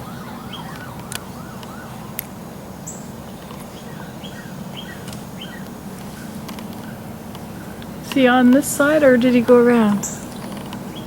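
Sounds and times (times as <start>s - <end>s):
birds chirping: 0.0s - 11.0s
low background hum: 0.0s - 11.0s
sharp clicks: 6.4s - 10.8s.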